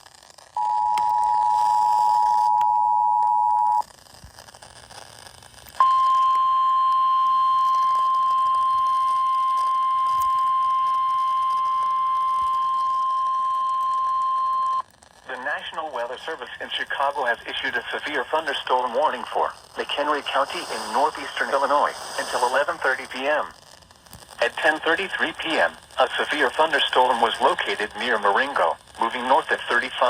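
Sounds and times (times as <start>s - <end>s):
single-pitch alarm tone: 0.6s - 3.8s, 5.8s - 14.8s
two-tone alarm signal: 0.6s - 3.8s, 5.8s - 14.8s.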